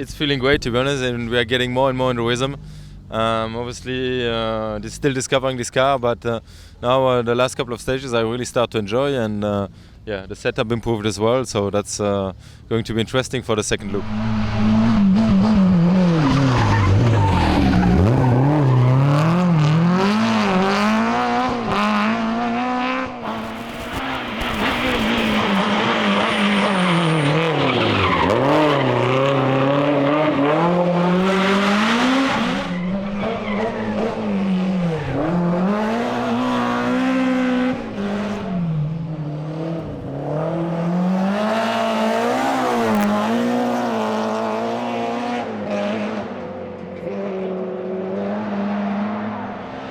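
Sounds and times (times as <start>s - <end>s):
rally engine revving: 13.8s - 49.9s
tyre noise: 23.2s - 36.6s.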